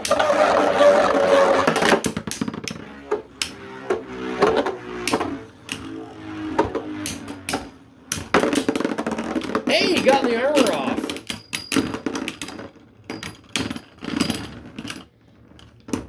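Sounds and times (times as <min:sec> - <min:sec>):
spinning tops grinding whir: 0:00.0 - 0:12.6
ringing hum of spinning tops: 0:04.3 - 0:13.5
spinning tops clacking: 0:07.1 - 0:12.4.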